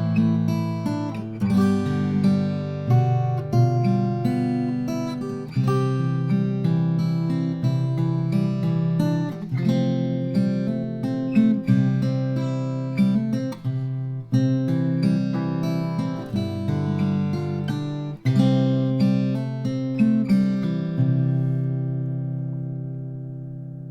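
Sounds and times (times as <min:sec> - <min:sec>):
acoustic guitar playing: 0:00.0 - 0:23.9.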